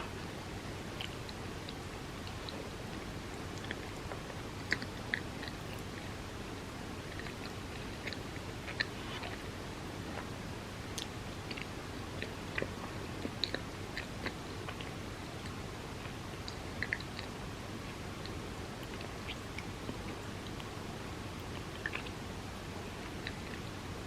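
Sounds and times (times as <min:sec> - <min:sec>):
background hiss: 0:00.0 - 0:24.0
wet chewing mouth clicks: 0:01.0 - 0:06.2, 0:07.1 - 0:09.5, 0:11.0 - 0:17.3, 0:21.4 - 0:22.2, 0:23.0 - 0:23.7.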